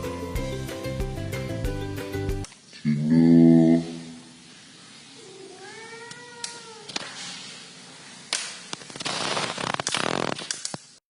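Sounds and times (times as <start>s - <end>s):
cat meowing: 5.2s - 7.0s
sharp clicks: 8.4s - 10.8s
bursts of noise: 8.9s - 10.5s.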